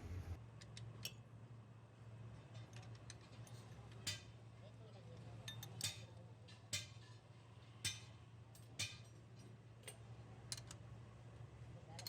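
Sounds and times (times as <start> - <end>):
steady low hum: 0.0 - 0.4.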